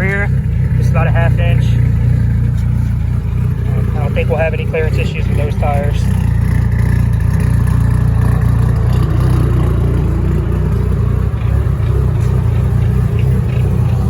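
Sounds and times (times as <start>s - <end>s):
car exhaust drone while driving: 0.0s - 14.0s.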